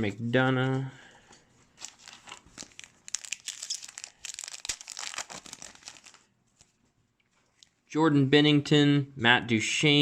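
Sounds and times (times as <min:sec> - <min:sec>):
wrapper tearing and crinkling: 0:01.8 - 0:06.3.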